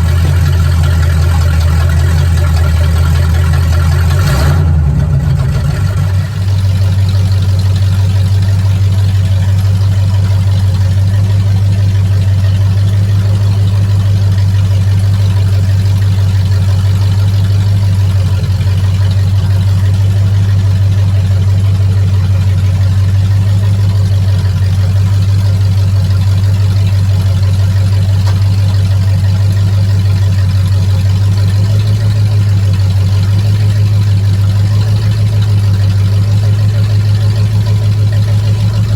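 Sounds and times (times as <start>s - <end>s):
truck engine idling: 0.0s - 38.9s.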